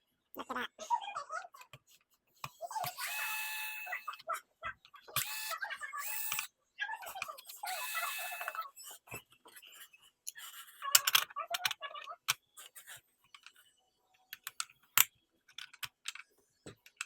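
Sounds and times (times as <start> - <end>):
clicks and taps of parts: 14.3 - 17.0.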